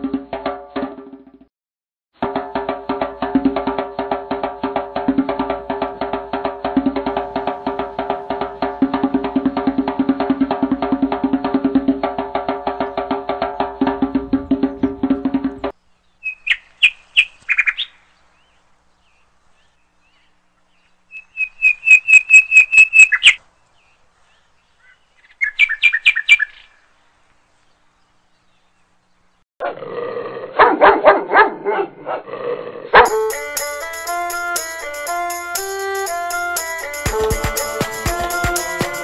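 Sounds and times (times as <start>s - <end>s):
low rough pulsing call: 4.0s - 15.7s
quick high animal chirps: 21.1s - 23.4s.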